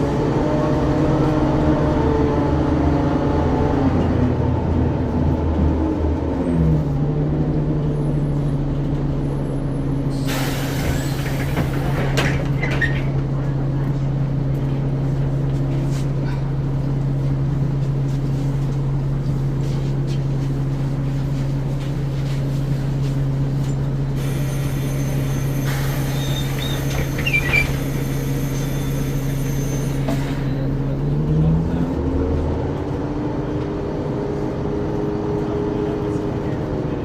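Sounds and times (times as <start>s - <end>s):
bus diesel engine idling: 0.0s - 37.0s
short squeaks: 24.8s - 30.6s.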